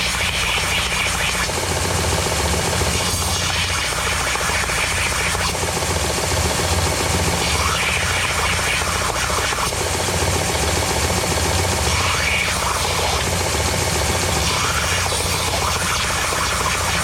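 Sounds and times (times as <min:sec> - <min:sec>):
power sander motor hum: 0:00.0 - 0:17.0.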